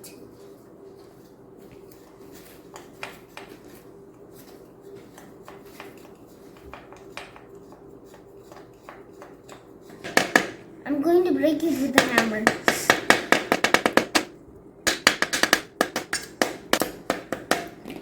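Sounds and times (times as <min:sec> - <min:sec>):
digging tool scratching clay: 0:01.2 - 0:10.1.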